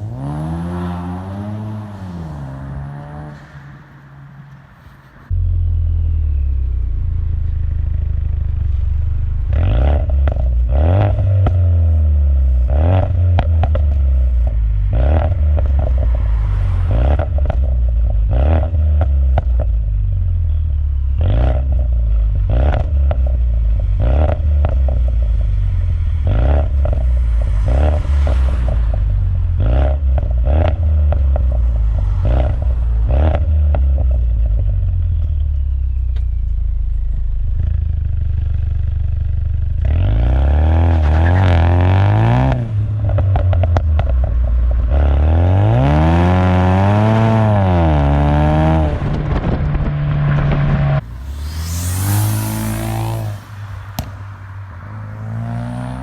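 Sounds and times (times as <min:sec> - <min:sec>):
deep exhaust rumble: 0:05.3 - 0:40.8, 0:47.4 - 0:54.8
exhaust pops and crackles: 0:13.0 - 0:14.6, 0:17.2 - 0:20.0, 0:42.5 - 0:45.2, 0:48.8 - 0:51.2, 0:52.8 - 0:54.6.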